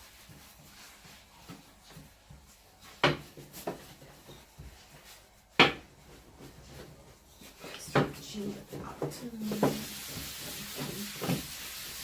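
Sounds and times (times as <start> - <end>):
soft rubbing of dough: 0.0 - 12.0
dough knocking on wooden board: 1.4 - 6.9.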